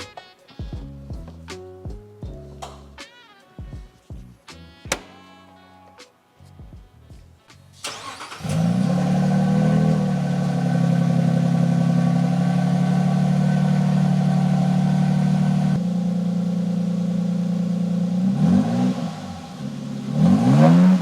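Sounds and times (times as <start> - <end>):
car engine starting and idling: 7.8 - 21.0.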